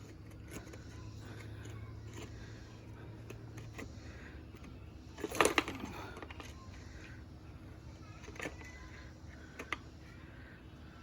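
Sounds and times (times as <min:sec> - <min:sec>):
plastic and metal parts clicking: 0:03.2 - 0:06.6.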